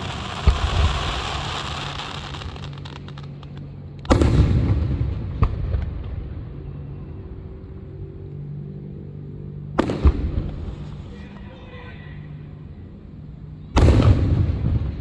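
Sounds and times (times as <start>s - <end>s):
firework thumps: 0.0s - 4.5s
fireworks crackling: 0.0s - 4.8s
loud firework bangs: 0.0s - 6.4s, 9.8s - 11.2s, 13.8s - 15.0s.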